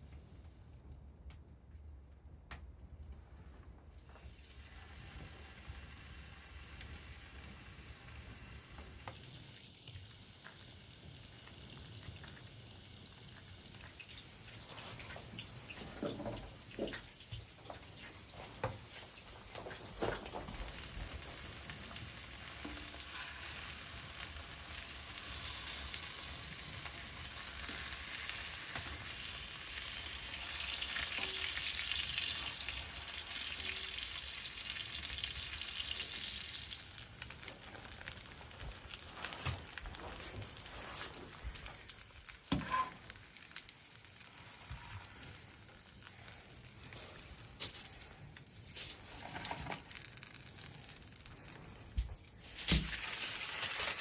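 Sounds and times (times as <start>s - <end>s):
steaks sizzling in a frying pan: 5.0s - 39.0s.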